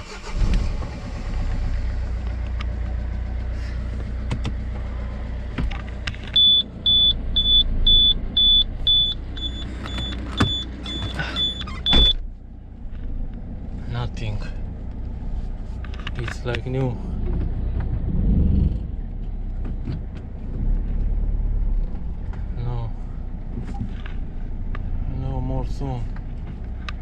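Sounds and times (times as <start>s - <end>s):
car engine rumbling: 0.0s - 27.0s
high electronic beeps: 6.4s - 12.2s.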